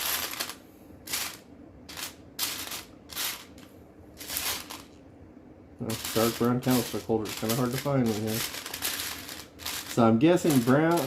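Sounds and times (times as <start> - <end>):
plastic toy bricks rattling: 0.0 - 3.6, 5.9 - 11.0.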